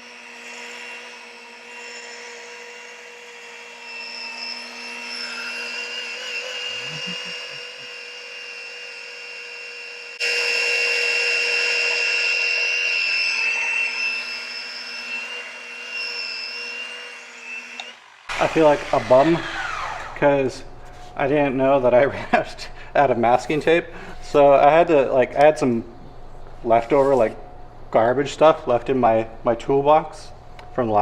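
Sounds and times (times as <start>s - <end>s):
glass polisher motor whining: 0.0s - 21.2s.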